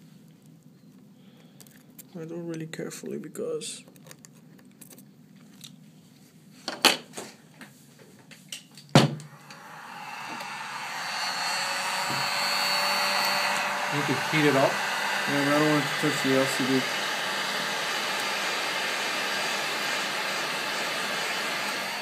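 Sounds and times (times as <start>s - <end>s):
hot-air blower rushing: 9.3s - 22.0s.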